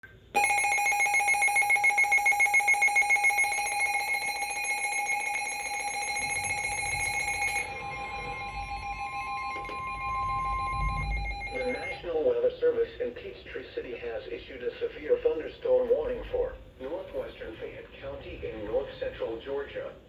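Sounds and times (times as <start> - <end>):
electronic alarm tone: 0.4 - 12.2
faint higher tone: 5.6 - 12.1.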